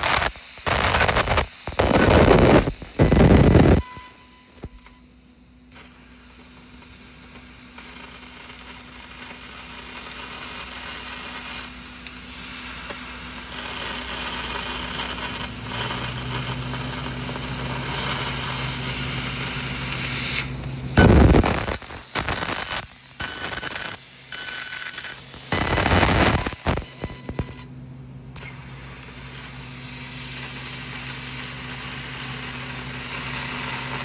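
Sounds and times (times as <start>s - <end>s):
laser cutting hiss: 0.0s - 5.0s, 5.9s - 27.7s
deeper hum: 0.1s - 4.0s.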